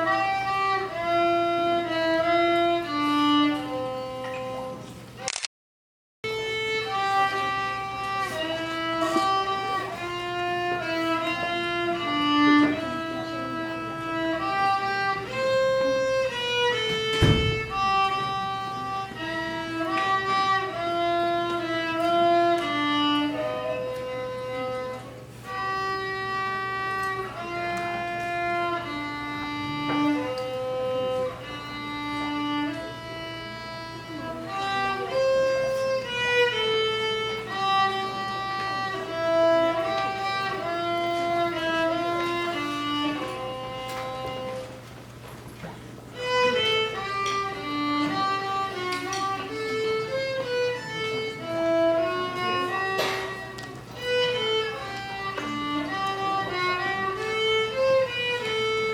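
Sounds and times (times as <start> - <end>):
violin melody: 0.0 - 5.3, 6.2 - 58.9
low thump: 17.1 - 17.9.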